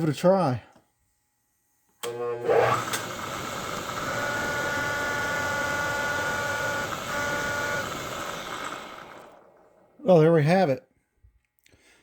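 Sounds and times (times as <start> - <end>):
milling machine spindle whine: 2.1 - 9.8.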